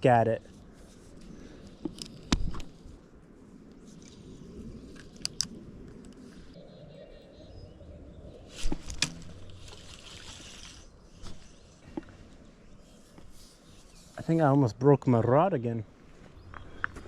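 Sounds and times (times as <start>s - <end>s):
creek water running: 8.6s - 12.2s.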